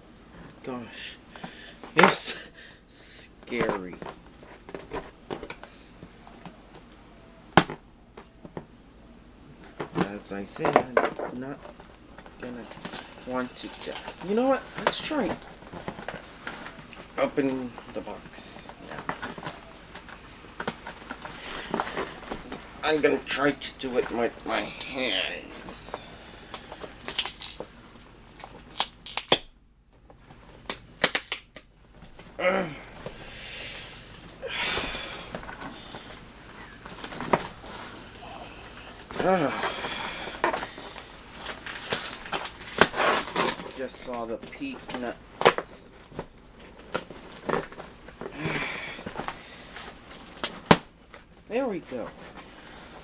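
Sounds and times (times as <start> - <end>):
cardboard box being torn open: 41.6 - 43.8.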